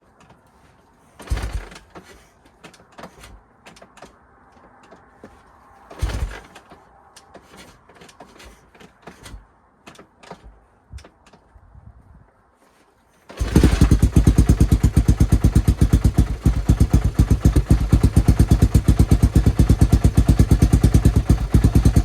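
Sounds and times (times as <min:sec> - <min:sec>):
motorcycle engine turning over: 0:01.1 - 0:10.6, 0:13.3 - 0:22.0
heavy kick-starter thumps: 0:01.2 - 0:02.3, 0:05.2 - 0:06.7.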